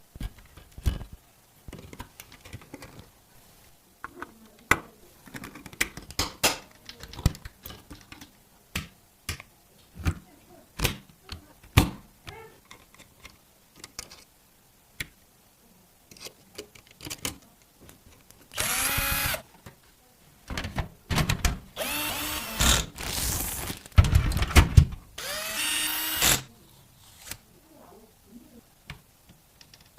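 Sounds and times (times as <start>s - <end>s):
electric screwdriver whirring: 18.6s - 19.4s, 21.8s - 23.6s, 25.2s - 26.5s
computer parts clicking and knocking: 24.0s - 25.0s.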